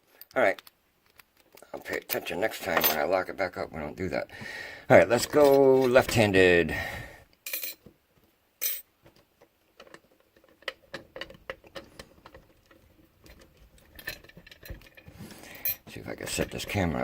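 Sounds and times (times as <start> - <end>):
small metal objects clinking: 8.6 - 8.9.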